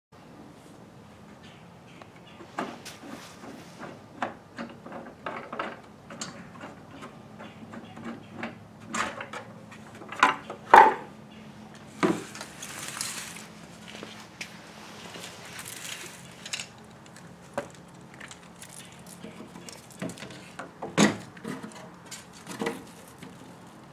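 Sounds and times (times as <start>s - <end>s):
parts clicking and rattling: 2.5s - 11.1s, 15.1s - 23.9s.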